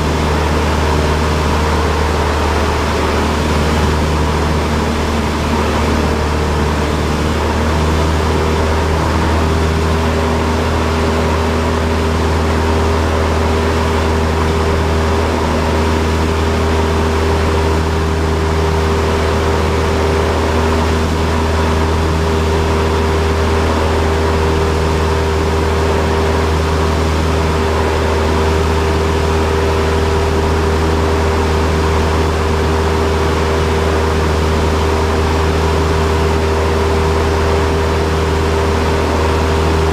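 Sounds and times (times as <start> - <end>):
aircraft propeller engine droning: 0.0 - 39.9.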